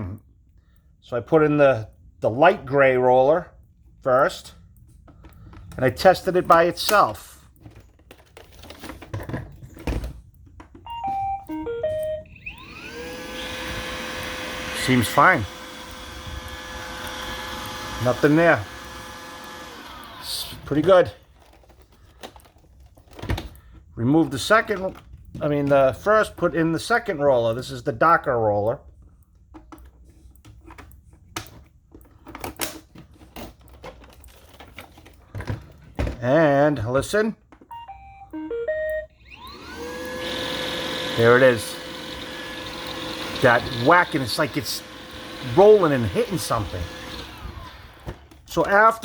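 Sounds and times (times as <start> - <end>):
electronic start-up beeps: 10.9 - 12.8, 37.7 - 39.4
vacuum motor whine: 10.9 - 20.6, 37.8 - 48.4.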